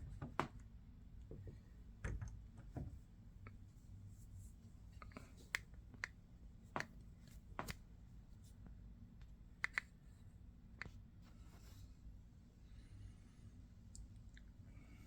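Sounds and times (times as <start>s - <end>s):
low steady hum: 0.0s - 15.0s
hands clicking and tapping plastic: 5.1s - 7.8s, 9.6s - 9.9s.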